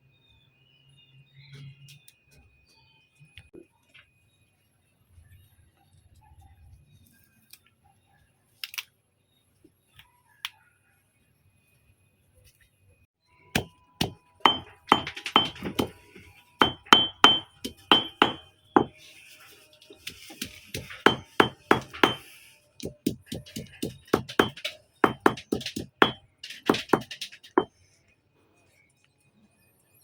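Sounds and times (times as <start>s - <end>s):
tool striking something hard: 13.6s - 16.0s, 16.6s - 18.9s, 20.4s - 27.7s.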